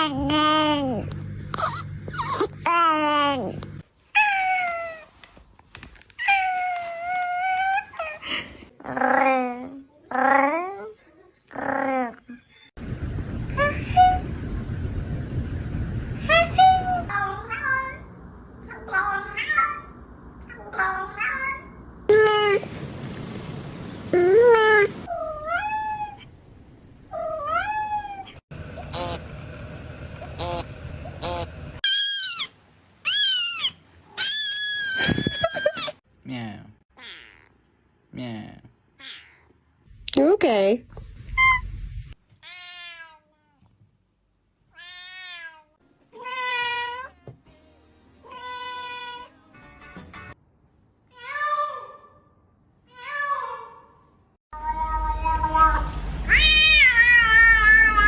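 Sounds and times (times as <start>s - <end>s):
cat meowing: 56.3s - 58.0s.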